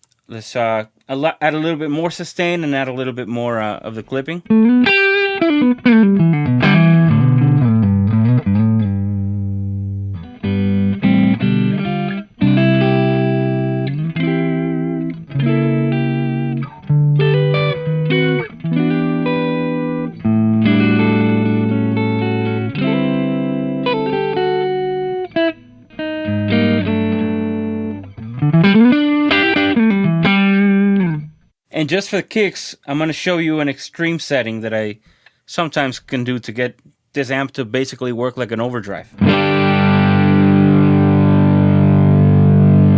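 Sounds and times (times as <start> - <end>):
electric guitar chords and notes: 4.4 - 31.4, 39.1 - 42.9.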